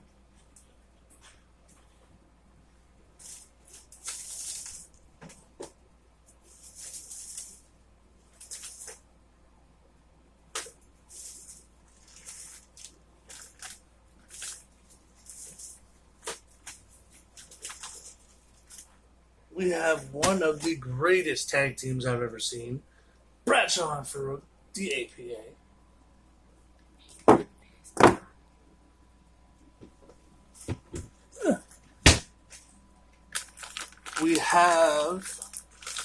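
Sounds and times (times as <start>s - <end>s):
packaging crinkling: 3.2s - 5.0s, 10.6s - 18.9s, 33.3s - 36.0s.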